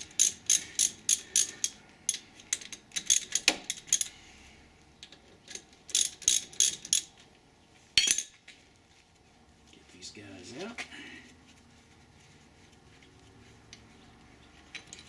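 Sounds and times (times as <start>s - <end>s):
ratchet wrench clicking: 0.0s - 4.1s, 5.9s - 7.1s.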